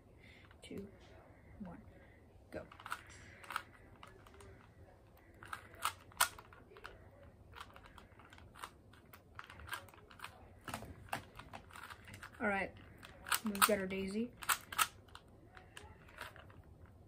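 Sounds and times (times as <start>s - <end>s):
puzzle cube clicking: 2.7s - 4.6s, 5.3s - 10.4s, 13.0s - 16.6s.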